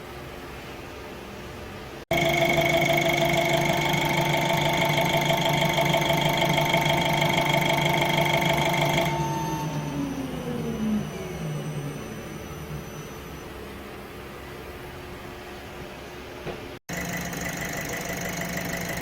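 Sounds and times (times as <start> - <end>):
diesel engine running: 2.1 - 13.9
steady whine: 2.1 - 15.6.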